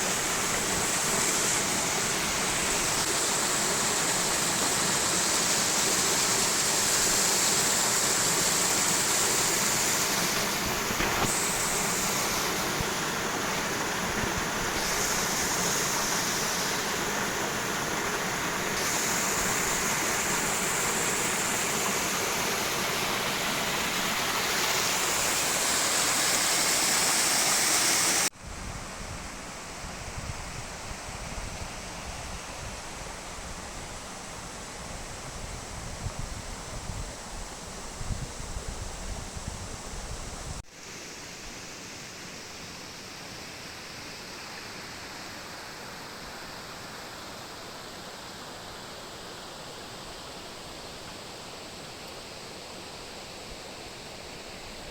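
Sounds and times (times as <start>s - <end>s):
rushing water: 0.0s - 28.4s, 29.2s - 54.9s
wind rustle: 0.0s - 54.9s
wind rumble on microphone: 28.4s - 40.6s.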